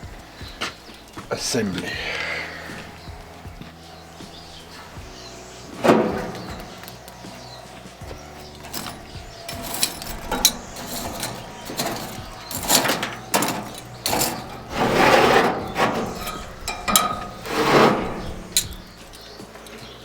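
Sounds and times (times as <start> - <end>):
utensil scraping a cast iron pot: 4.2 - 20.0.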